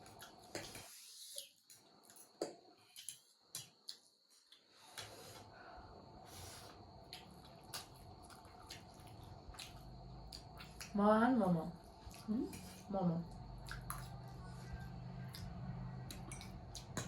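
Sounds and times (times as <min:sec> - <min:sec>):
chewing and wet smacks: 0:00.0 - 0:05.4, 0:07.0 - 0:11.0, 0:11.7 - 0:17.0
low steady hum: 0:05.5 - 0:17.0.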